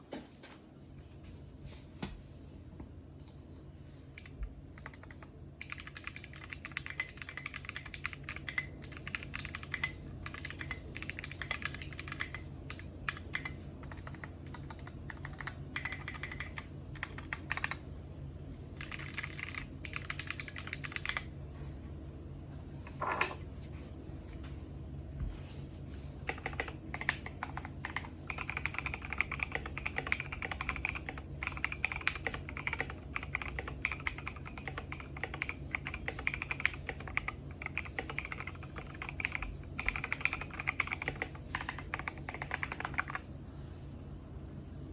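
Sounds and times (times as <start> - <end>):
faint steady hum: 0.0 - 44.9
mechanical keyboard typing: 4.2 - 17.8, 18.8 - 21.3, 26.2 - 43.2.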